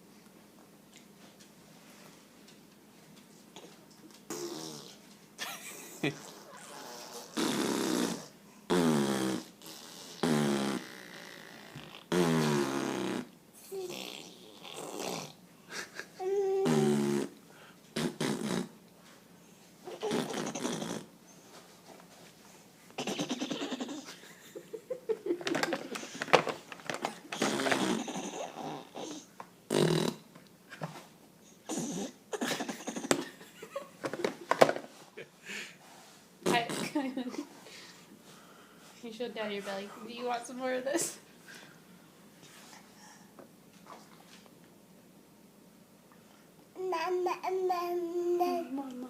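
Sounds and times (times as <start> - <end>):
child making buzzy voice noises: 46.8 - 49.0.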